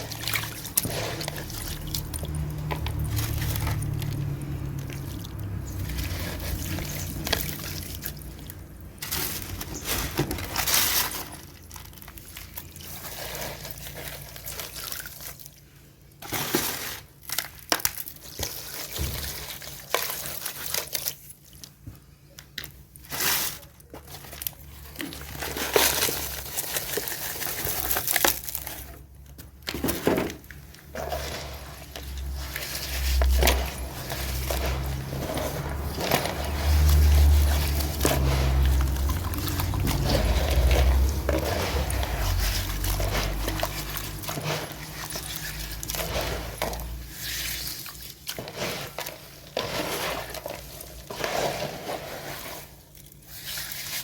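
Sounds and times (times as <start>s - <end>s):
water splashing: 0.0s - 13.1s, 31.0s - 49.2s.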